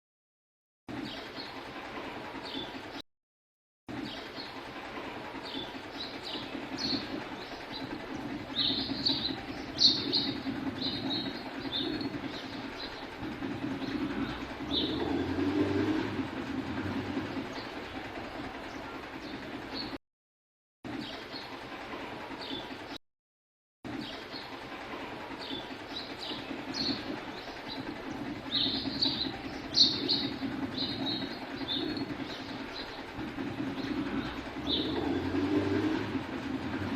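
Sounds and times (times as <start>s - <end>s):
sparrows chirping: 0.9s - 3.0s, 3.9s - 20.0s, 20.9s - 23.0s, 23.9s - 36.9s
low background rumble: 4.7s - 20.0s, 24.7s - 36.9s.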